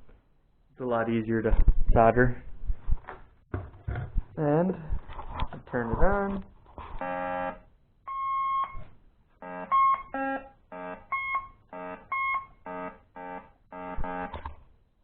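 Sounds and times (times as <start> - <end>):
metal detector beeping: 7.0 - 8.8, 9.4 - 14.4.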